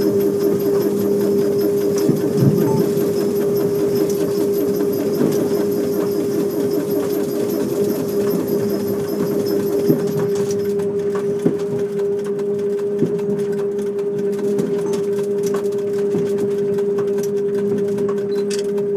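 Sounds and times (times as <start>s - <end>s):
rattling clatter of train wheels: 0.0s - 10.8s.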